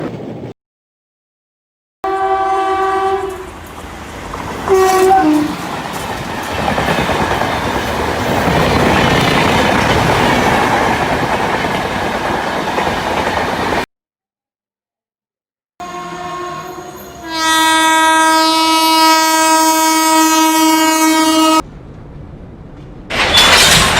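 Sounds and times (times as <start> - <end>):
train horn blasts: 2.0 - 3.6, 4.7 - 5.6, 15.8 - 21.6
train running on rails: 2.3 - 13.9, 15.8 - 23.9.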